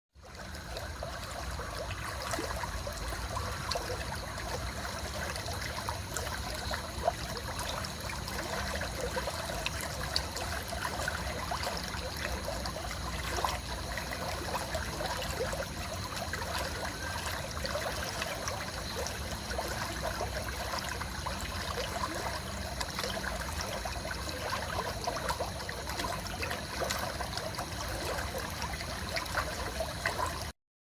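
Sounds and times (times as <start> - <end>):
running water trickling: 0.2 - 30.5.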